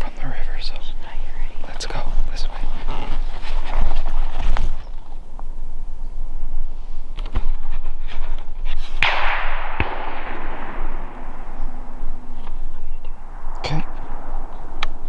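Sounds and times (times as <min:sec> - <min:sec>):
rifle shot with rolling echo: 0:08.9 - 0:15.0.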